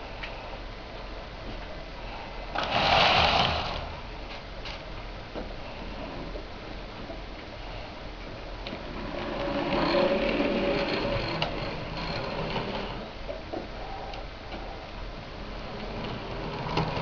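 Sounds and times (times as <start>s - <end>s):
model train motor whirring: 2.6s - 3.9s, 8.9s - 13.1s, 15.4s - 17.0s.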